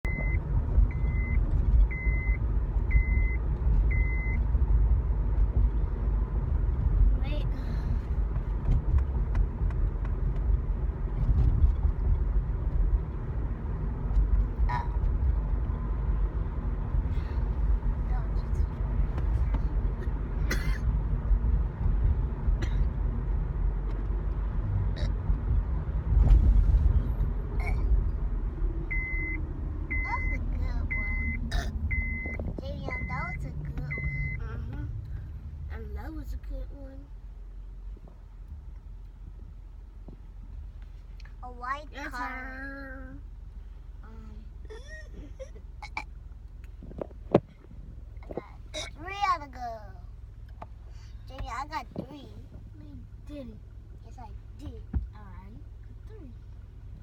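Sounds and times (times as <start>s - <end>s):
high electronic beep: 0.0s - 4.4s, 28.9s - 33.2s, 33.9s - 34.4s
low engine rumble: 0.0s - 57.0s.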